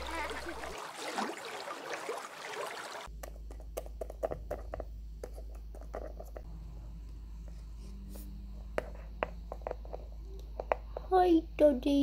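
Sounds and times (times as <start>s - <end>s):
water splashing: 0.0s - 3.1s
steady low hum: 4.4s - 11.8s.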